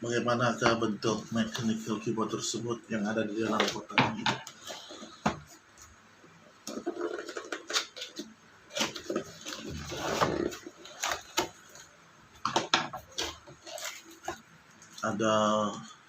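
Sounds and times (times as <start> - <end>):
rustling packaging: 6.6 - 15.2.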